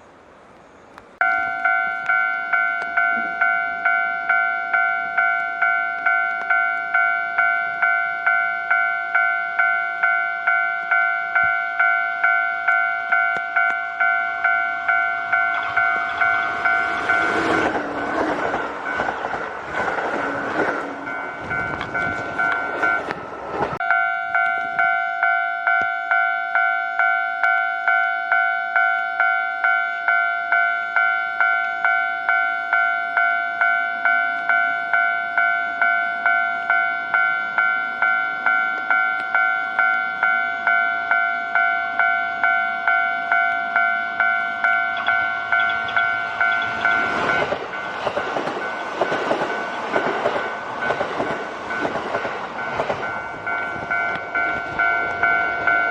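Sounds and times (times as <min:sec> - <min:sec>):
level-crossing warning bell: 0:01.2 - 0:55.9
train wheels clattering on rails: 0:14.9 - 0:23.8, 0:43.4 - 0:55.9.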